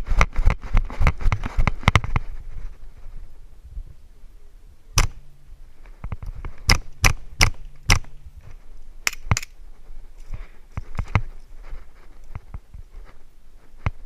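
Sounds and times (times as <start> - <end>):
airsoft gun shots: 5.0 - 5.2, 6.7 - 8.2.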